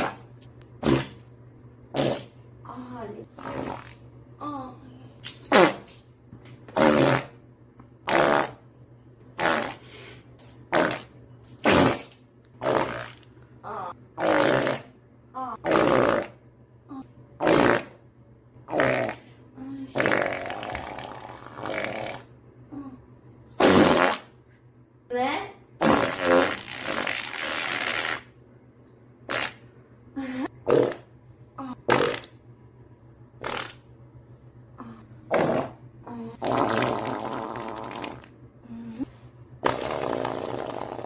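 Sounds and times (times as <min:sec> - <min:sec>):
farts: 0:00.8 - 0:01.2, 0:01.9 - 0:02.4, 0:03.3 - 0:04.0, 0:05.4 - 0:06.0, 0:06.7 - 0:07.4, 0:08.0 - 0:08.6, 0:09.4 - 0:09.8, 0:10.7 - 0:13.3, 0:14.2 - 0:15.0, 0:15.6 - 0:16.4, 0:17.4 - 0:18.0, 0:18.7 - 0:19.2, 0:19.9 - 0:22.3, 0:23.6 - 0:24.3, 0:25.8 - 0:28.3, 0:29.3 - 0:29.6, 0:30.6 - 0:31.1, 0:31.8 - 0:32.4, 0:33.4 - 0:33.9, 0:35.3 - 0:35.8, 0:36.4 - 0:38.3, 0:39.6 - 0:41.0.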